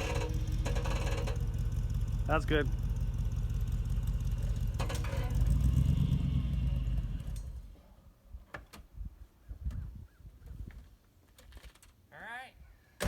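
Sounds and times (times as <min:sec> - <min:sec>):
car engine running: 0:00.0 - 0:07.7.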